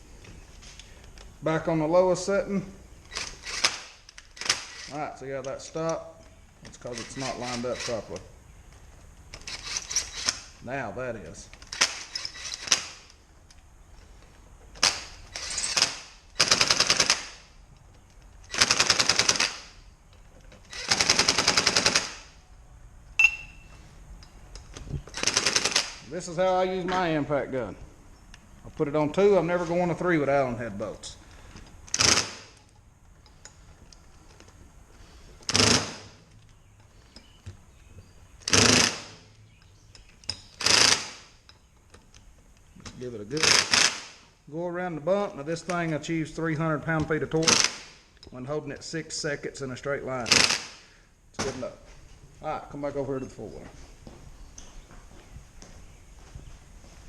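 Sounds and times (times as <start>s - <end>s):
impact wrench driving bolts: 3.1s - 6.0s, 6.6s - 8.3s, 9.3s - 10.6s, 11.6s - 13.2s, 14.7s - 17.5s, 18.4s - 19.8s, 20.5s - 22.3s, 25.0s - 26.1s, 31.5s - 33.6s, 35.4s - 36.3s, 38.4s - 41.6s, 42.9s - 44.2s, 47.0s - 48.3s, 50.2s - 50.8s.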